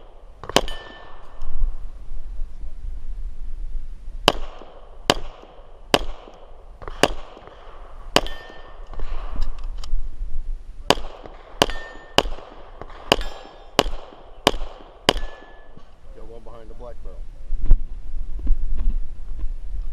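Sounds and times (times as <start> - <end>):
pistol shots: 0.0 - 1.4, 4.2 - 9.2, 10.9 - 15.8
short metallic ring: 0.6 - 1.4, 8.2 - 8.8, 11.7 - 12.2, 15.2 - 15.8.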